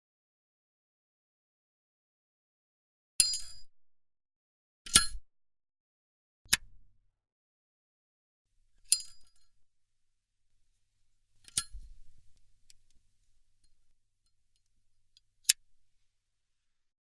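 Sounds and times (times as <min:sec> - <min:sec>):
sharp short click: 0:04.9 - 0:05.2, 0:06.5 - 0:06.7.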